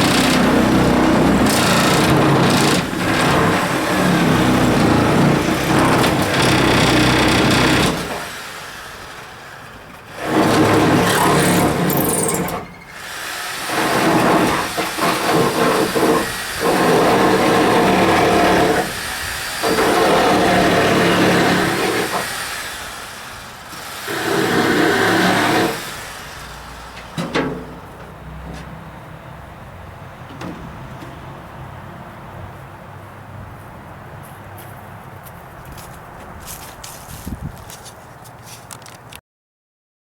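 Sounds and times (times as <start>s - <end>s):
power tool working wood: 0.0s - 26.9s.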